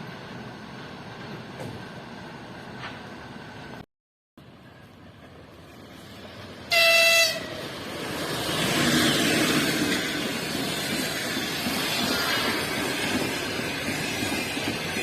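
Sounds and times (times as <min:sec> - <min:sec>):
train rumbling on rails: 0:00.0 - 0:03.8, 0:04.4 - 0:15.0
train horn blast: 0:06.7 - 0:07.6.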